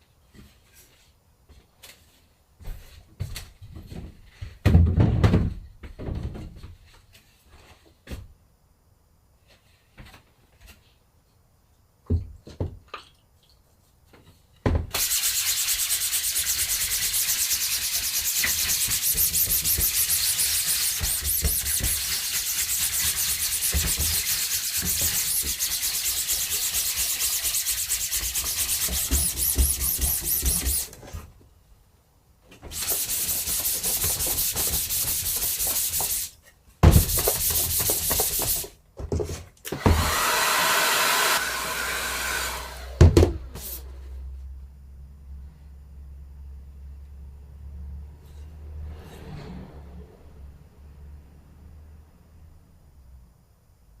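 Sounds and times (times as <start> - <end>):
loud rushing hiss: 15.0 - 29.1.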